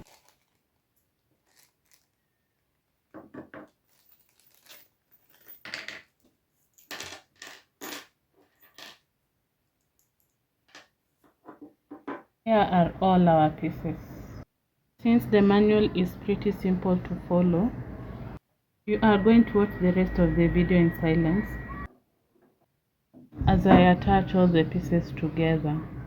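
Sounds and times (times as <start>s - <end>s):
packaging crinkling and tearing: 0.0s - 2.4s, 4.2s - 4.8s.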